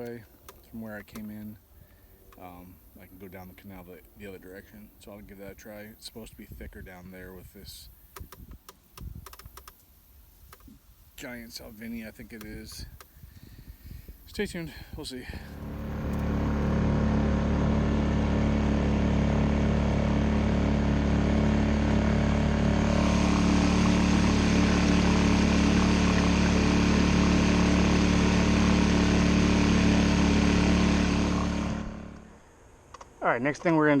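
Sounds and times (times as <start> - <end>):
small engine running: 15.5 - 32.4.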